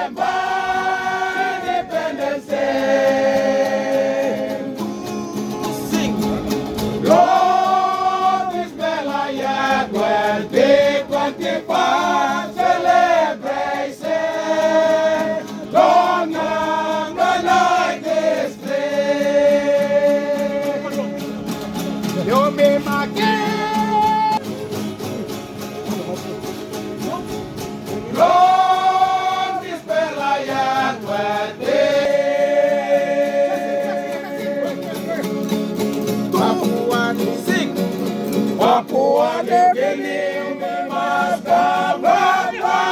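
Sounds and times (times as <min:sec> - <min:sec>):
voices singing in harmony: 0:00.0 - 0:21.4, 0:28.1 - 0:35.3, 0:38.4 - 0:42.9
strummed guitars: 0:00.0 - 0:42.9.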